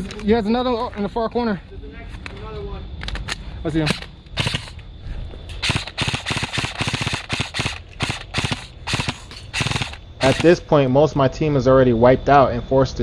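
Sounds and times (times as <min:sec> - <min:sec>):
airsoft rifle shots: 0:03.8 - 0:04.8, 0:05.6 - 0:10.6.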